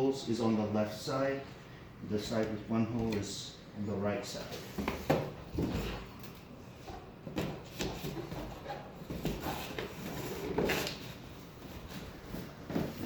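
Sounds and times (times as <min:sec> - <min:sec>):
knocks and rustles of handled parts: 0:04.7 - 0:13.0.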